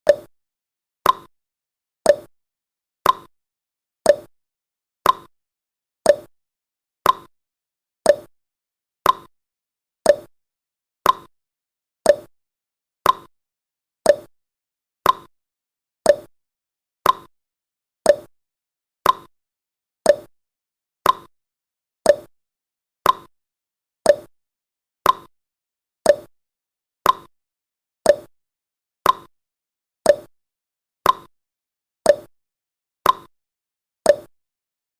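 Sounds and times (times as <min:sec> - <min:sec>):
clock ticking: 0:02.1 - 0:02.3, 0:04.1 - 0:04.3, 0:06.1 - 0:06.3, 0:08.1 - 0:08.3, 0:09.0 - 0:09.3, 0:10.1 - 0:10.3, 0:11.0 - 0:11.3, 0:12.1 - 0:12.3, 0:13.0 - 0:13.3, 0:14.1 - 0:14.3, 0:15.0 - 0:15.3, 0:16.1 - 0:16.3, 0:17.0 - 0:17.3, 0:18.1 - 0:18.3, 0:20.1 - 0:20.3, 0:21.0 - 0:21.3, 0:22.1 - 0:22.3, 0:23.0 - 0:23.3, 0:24.1 - 0:24.3, 0:26.1 - 0:26.3, 0:27.0 - 0:27.3, 0:28.1 - 0:28.3, 0:29.0 - 0:29.3, 0:30.1 - 0:30.3, 0:31.0 - 0:31.3, 0:32.1 - 0:32.3, 0:33.0 - 0:33.3, 0:34.1 - 0:34.3.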